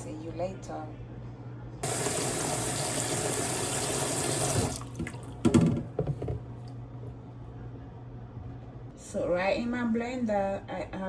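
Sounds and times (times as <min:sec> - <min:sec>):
water running from tap: 0:01.8 - 0:05.6.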